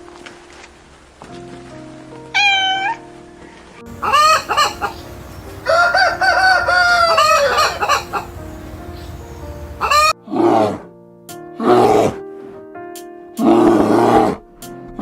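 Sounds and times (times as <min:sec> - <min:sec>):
soft background music: 0:00.0 - 0:15.0
rooster crowing: 0:03.9 - 0:10.1.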